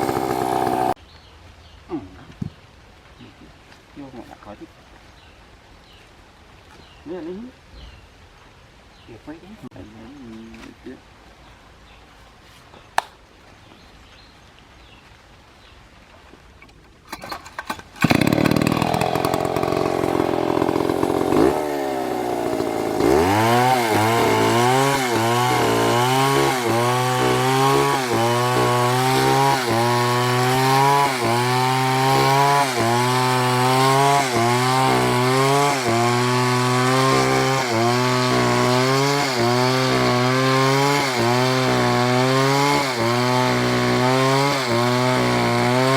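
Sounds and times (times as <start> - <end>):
chainsaw cutting: 0.0 - 1.0, 17.1 - 45.9.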